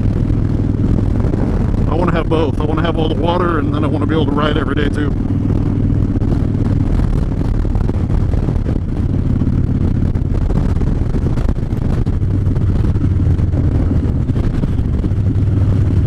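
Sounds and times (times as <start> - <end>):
motorcycle engine running: 0.0 - 16.0
wind noise: 0.0 - 16.0.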